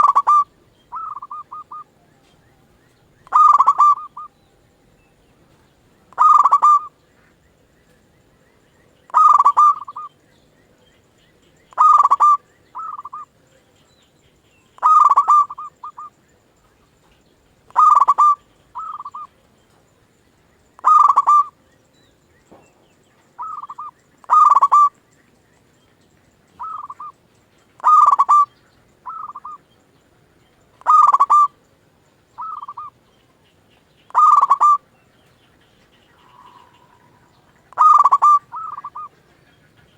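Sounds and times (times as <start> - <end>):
dove cooing: 0.0 - 7.4, 9.0 - 10.2, 11.7 - 13.8, 14.8 - 19.6, 20.8 - 21.6, 23.3 - 25.0, 26.6 - 29.8, 30.8 - 31.6, 32.4 - 39.9.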